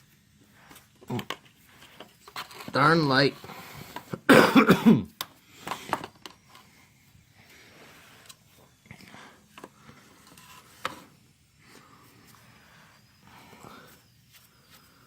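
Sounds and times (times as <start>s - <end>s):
clicks and scrapes of handling: 0.7s - 4.1s.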